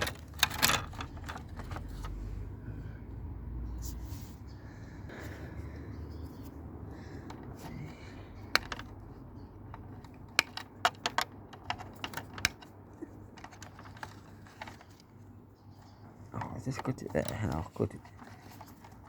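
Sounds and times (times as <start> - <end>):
tools clicking and tapping: 7.2 - 15.0.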